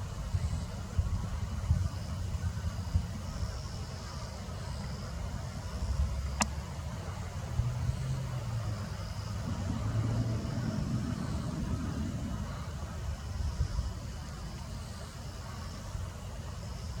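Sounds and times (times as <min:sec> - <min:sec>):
road traffic rumble: 0:00.0 - 0:17.0
vehicle engine hum: 0:04.7 - 0:17.0.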